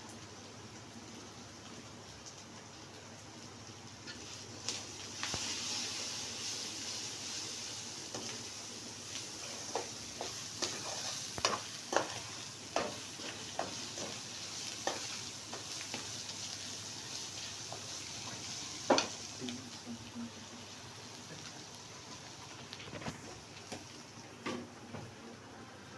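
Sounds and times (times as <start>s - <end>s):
paste sizzling in hot oil: 3.6s - 24.2s.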